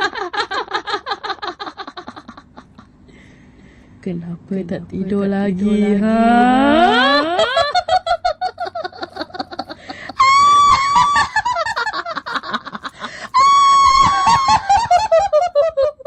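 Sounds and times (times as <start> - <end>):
ghost cackling laugh: 0.0 - 3.0, 5.6 - 16.0
high-pitched shriek: 13.4 - 14.6.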